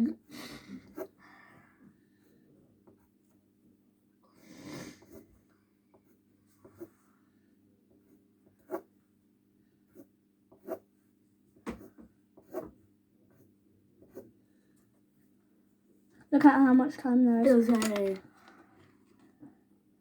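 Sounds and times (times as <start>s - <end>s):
pencil scratching on paper: 4.8s - 7.1s, 7.9s - 9.0s, 9.9s - 10.9s, 11.7s - 14.4s.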